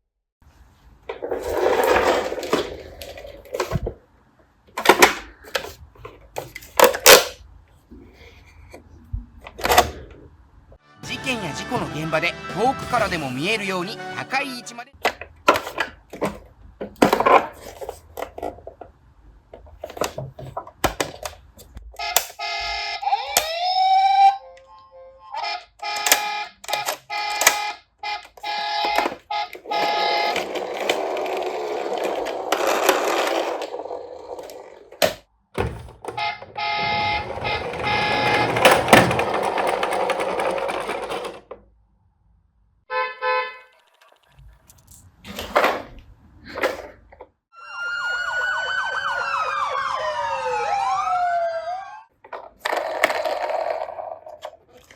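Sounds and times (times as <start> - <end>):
plastic wheels rattling: 1.1 - 4.0, 28.3 - 35.0, 35.9 - 41.6, 52.2 - 54.9
electronic toy sound effects: 47.6 - 49.6.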